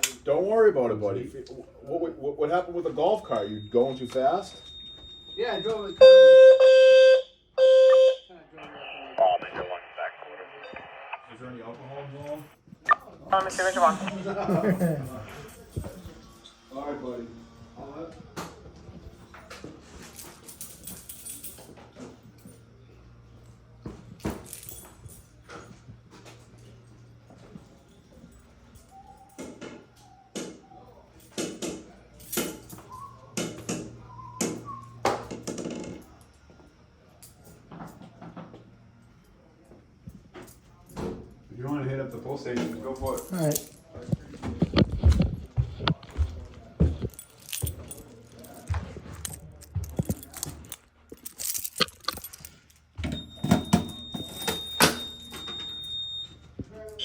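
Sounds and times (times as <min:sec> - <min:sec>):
keys jangling: 0:19.4 - 0:22.7, 0:24.1 - 0:30.2, 0:32.1 - 0:33.1, 0:42.6 - 0:44.0, 0:46.9 - 0:55.3.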